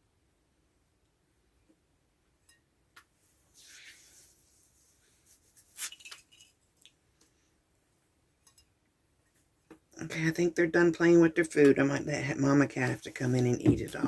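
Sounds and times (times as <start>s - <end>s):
brief rustle: 3.5s - 6.6s.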